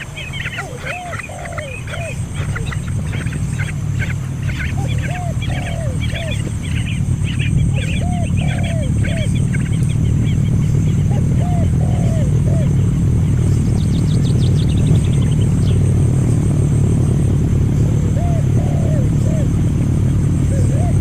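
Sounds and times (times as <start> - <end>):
lower arched bird call: 0.0 - 15.8
birds chirping rapidly: 0.0 - 21.0
low rumble: 0.0 - 21.0.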